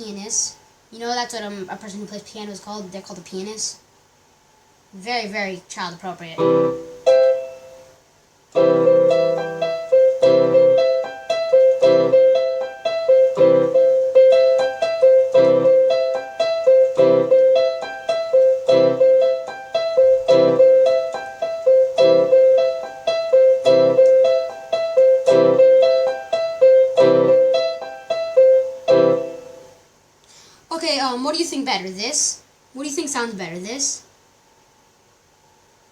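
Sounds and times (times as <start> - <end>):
electronic keyboard piano: 6.3 - 29.8.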